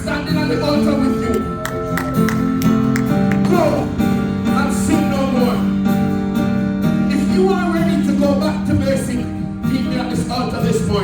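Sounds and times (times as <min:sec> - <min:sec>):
held instrumental chords: 0:00.0 - 0:11.0.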